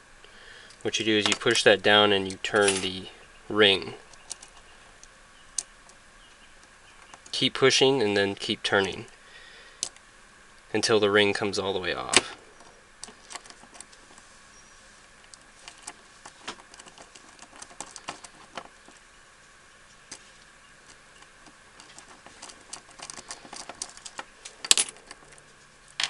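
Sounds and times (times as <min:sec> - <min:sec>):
metal lock parts clicking: 0:02.2 - 0:03.0, 0:04.1 - 0:04.6, 0:12.0 - 0:14.1, 0:15.3 - 0:19.0, 0:20.8 - 0:25.4.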